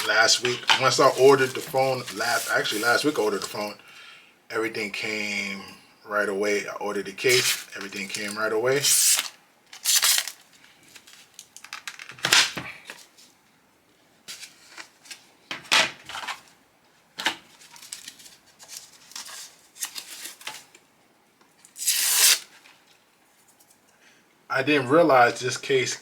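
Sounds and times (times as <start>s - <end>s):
plastic packaging rustling: 0.0s - 3.7s, 7.2s - 13.4s, 16.0s - 16.6s, 17.2s - 20.8s.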